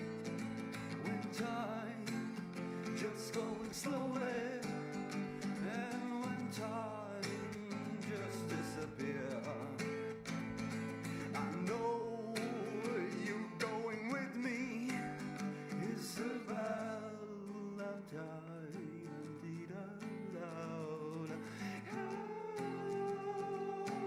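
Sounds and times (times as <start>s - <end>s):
song with guitar and singing: 0.0s - 24.0s.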